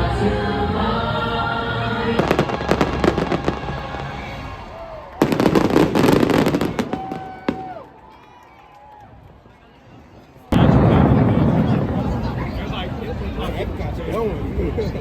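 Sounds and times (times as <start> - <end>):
music: 0.0 - 6.6
fireworks crackling and popping: 2.2 - 8.0.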